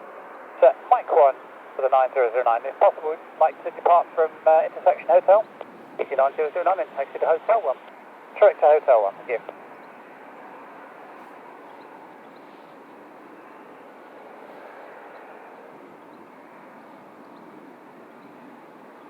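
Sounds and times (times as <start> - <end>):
jet engines running: 0.0 - 19.0.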